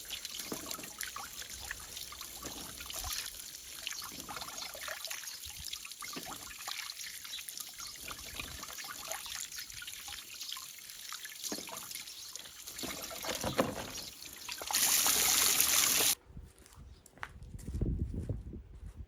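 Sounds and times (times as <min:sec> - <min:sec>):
rush of running water: 0:00.0 - 0:16.2
water trickling: 0:00.0 - 0:16.2
small knocks: 0:12.8 - 0:14.1.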